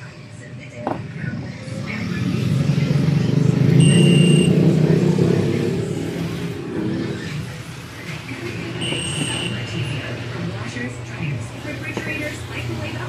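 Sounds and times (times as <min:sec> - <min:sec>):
short high-pitched beep: 0:03.8 - 0:04.6, 0:08.8 - 0:09.6.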